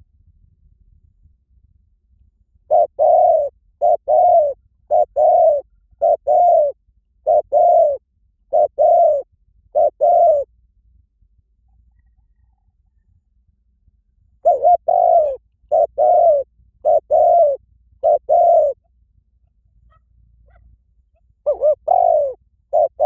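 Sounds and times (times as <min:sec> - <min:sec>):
dove cooing: 0:02.7 - 0:10.5, 0:14.4 - 0:18.9, 0:21.4 - 0:23.0.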